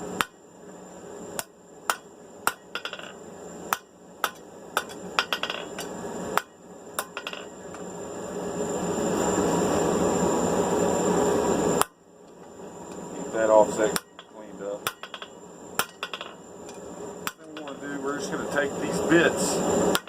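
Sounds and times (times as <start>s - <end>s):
hammer striking steel on anvil: 1.4s - 7.5s, 13.9s - 16.4s, 17.2s - 17.8s
steady rushing noise: 12.7s - 20.0s.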